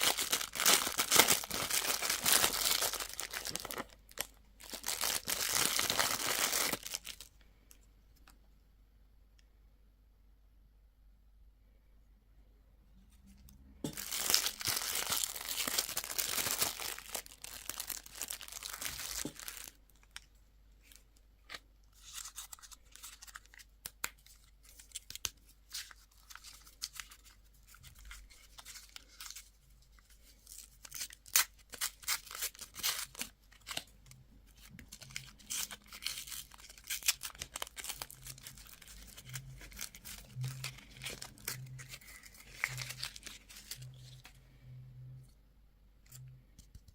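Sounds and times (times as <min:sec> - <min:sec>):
candy wrapper tearing and crinkling: 0:00.0 - 0:07.4, 0:13.9 - 0:20.3, 0:20.9 - 0:44.3.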